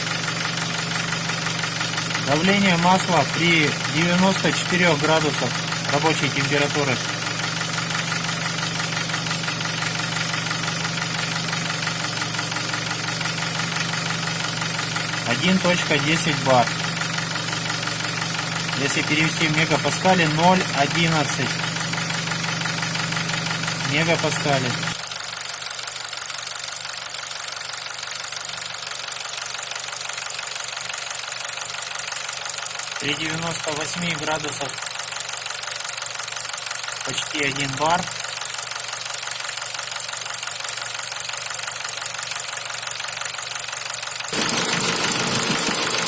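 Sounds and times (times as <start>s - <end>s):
car engine idling: 0.0s - 46.0s
engine knock: 0.0s - 46.0s
fast ticking chatter: 1.9s - 8.3s, 15.2s - 22.3s, 23.8s - 25.0s, 32.8s - 42.5s, 44.2s - 46.0s.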